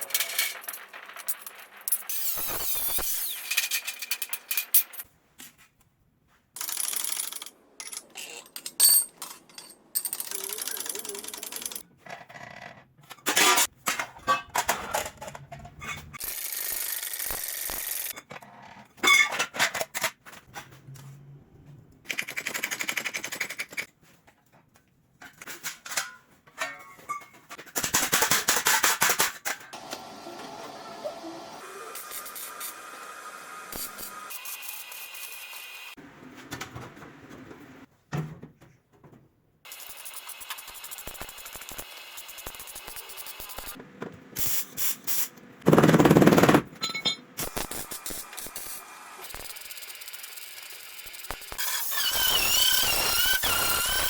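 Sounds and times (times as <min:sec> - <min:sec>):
rapid tapping impacts: 0:45.7 - 0:46.7
metal clinks and knocks: 0:46.7 - 0:47.4.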